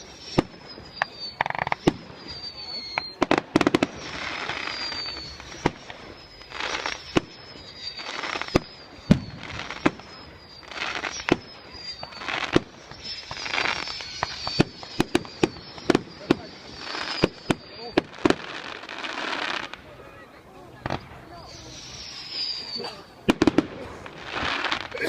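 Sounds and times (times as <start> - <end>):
fireworks bangs: 0.0 - 25.0
fireworks crackling: 0.0 - 25.0
high falling whistles: 0.0 - 25.0.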